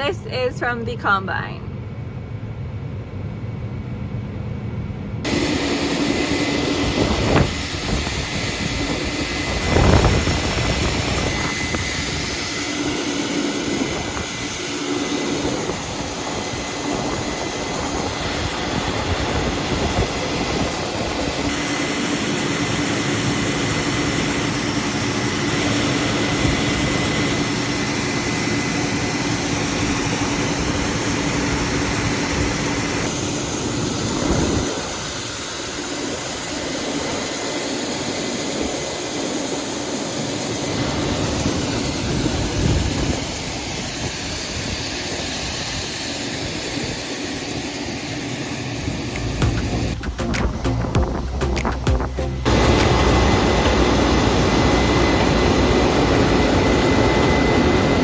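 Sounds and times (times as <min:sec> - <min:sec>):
high machine whine: 0:05.2 - 0:38.1, 0:48.5 - 0:58.0
harvester engine hum: 0:49.0 - 0:55.4
loud thumps: 0:49.2 - 0:53.1.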